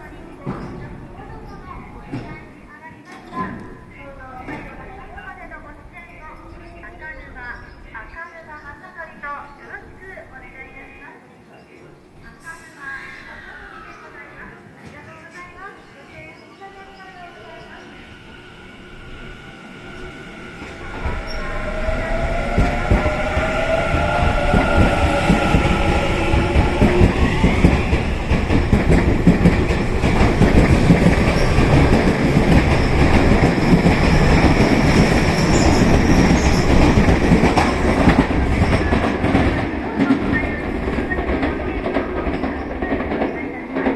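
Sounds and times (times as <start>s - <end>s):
train wheels clattering over rails: 18.7s - 43.9s.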